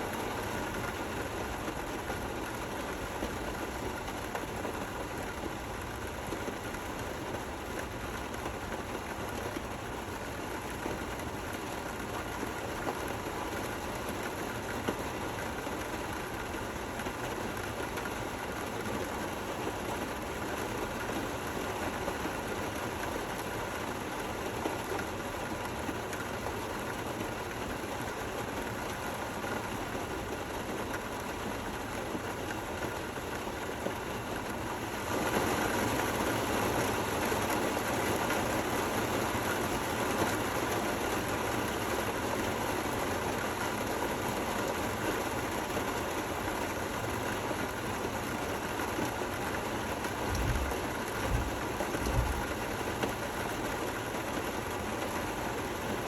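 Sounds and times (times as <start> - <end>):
steady rain falling: 0.0 - 56.0
low dull thumps: 50.3 - 52.5.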